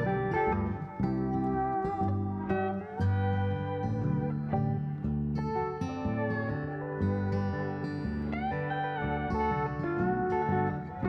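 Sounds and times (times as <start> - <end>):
plucked guitar music: 0.0 - 11.0.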